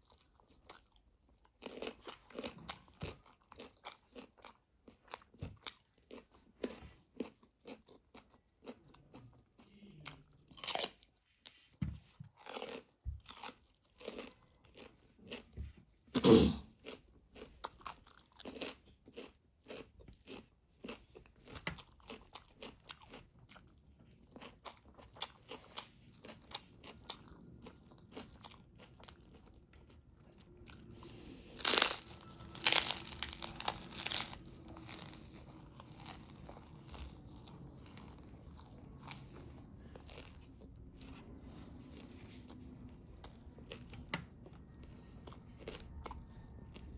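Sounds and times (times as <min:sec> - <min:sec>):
person chewing and crunching food: 0:00.0 - 0:46.9
crackling noises: 0:31.0 - 0:39.6.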